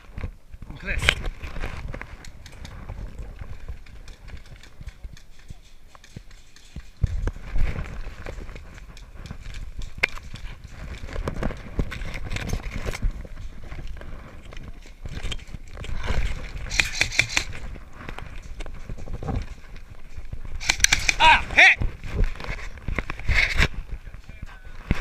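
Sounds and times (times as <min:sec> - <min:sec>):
footsteps: 0:01.1 - 0:25.0
sharp clicks and taps: 0:16.7 - 0:17.6, 0:20.6 - 0:21.2.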